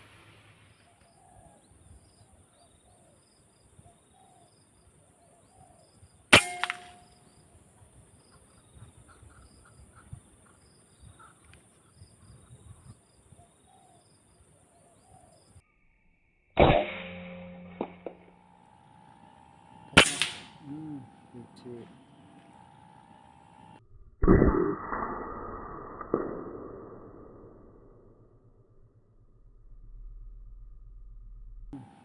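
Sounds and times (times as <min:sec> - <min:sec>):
high insect hiss: 0:00.0 - 0:16.4
air rifle shot: 0:06.3 - 0:07.2, 0:16.6 - 0:23.8
doves cooing: 0:07.7 - 0:15.6, 0:18.8 - 0:23.7.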